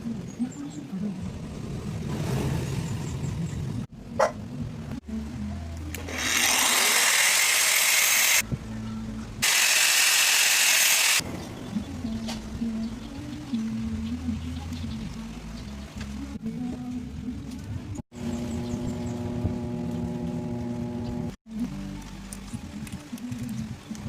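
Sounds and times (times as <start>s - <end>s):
power tool running under load: 6.0s - 8.4s, 9.4s - 11.2s.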